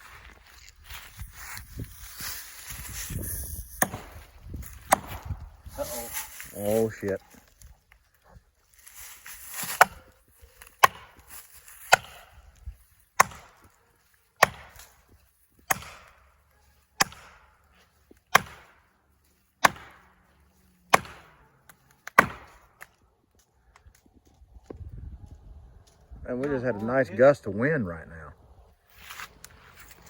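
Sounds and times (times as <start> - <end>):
hammer striking a wedge: 3.8 - 4.1, 15.7 - 16.1, 18.4 - 18.7, 19.6 - 20.0, 20.9 - 21.4, 22.2 - 22.6.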